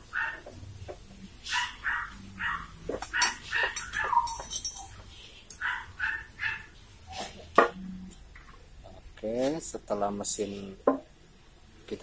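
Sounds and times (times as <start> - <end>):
dog barking: 0.1 - 0.5, 1.4 - 4.5, 5.6 - 6.7.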